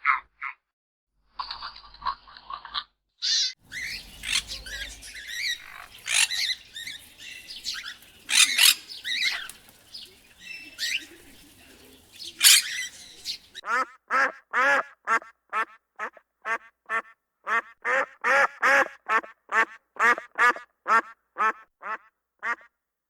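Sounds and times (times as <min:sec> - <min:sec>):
birds chirping: 0:03.6 - 0:13.6.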